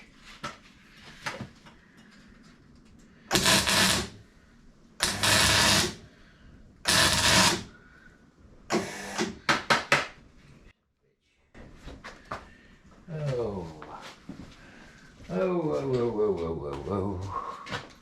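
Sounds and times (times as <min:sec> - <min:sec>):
welding bursts: 0:03.3 - 0:04.2, 0:05.0 - 0:06.1, 0:06.9 - 0:07.7.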